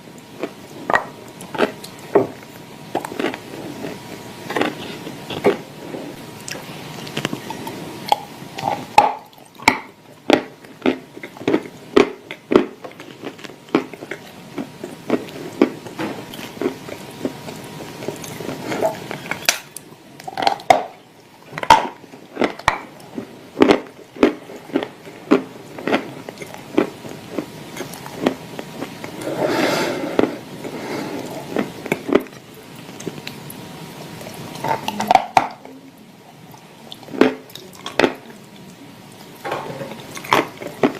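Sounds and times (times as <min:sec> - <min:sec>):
crunching and chewing clay: 0:00.1 - 0:29.2.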